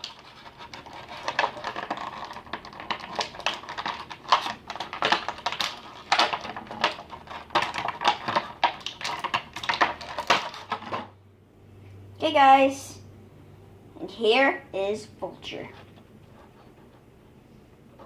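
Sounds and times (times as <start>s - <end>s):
plastic packaging crackling: 0.0s - 11.1s.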